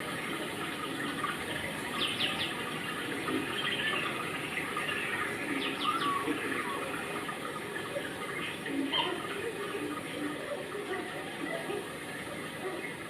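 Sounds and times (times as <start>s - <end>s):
running water: 0.0s - 13.0s
bird chirping: 1.9s - 2.6s, 3.3s - 7.0s.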